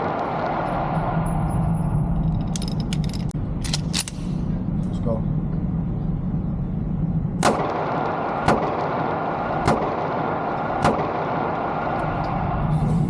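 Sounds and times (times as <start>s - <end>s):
steady low rumble: 0.0s - 13.0s
pistol shots: 7.4s - 12.2s.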